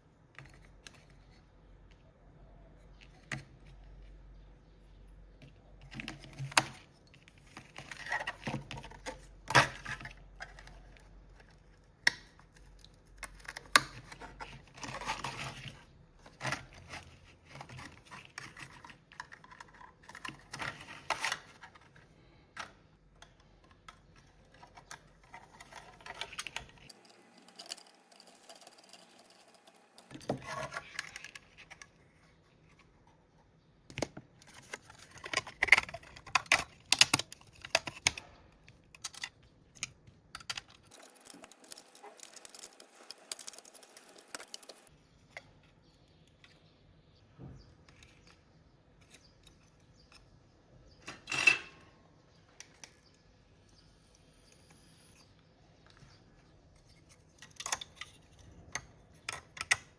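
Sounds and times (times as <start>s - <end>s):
small parts and tools clicking: 5.4s - 32.0s, 33.9s - 45.5s, 51.0s - 59.9s
scraping and rustling at workbench: 13.9s - 22.4s, 24.4s - 33.6s.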